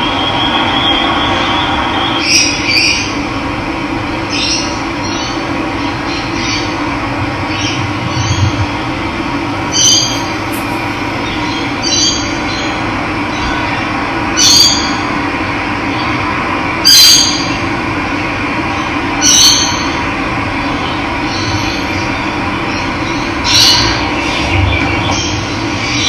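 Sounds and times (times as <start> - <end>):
bird giving short high call: 9.6 - 12.1.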